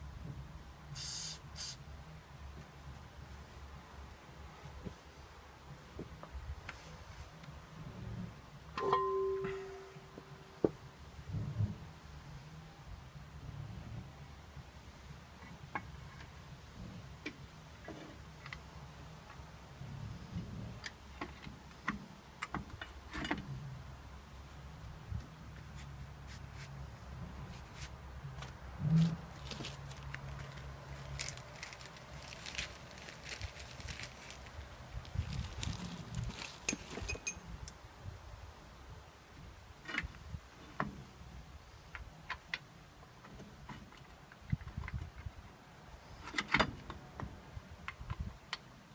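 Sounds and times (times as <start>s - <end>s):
steady low hum: 0.0s - 15.2s
ringing metallic clinks: 8.8s - 10.2s, 36.7s - 37.5s
metal tools clinking: 36.4s - 37.5s.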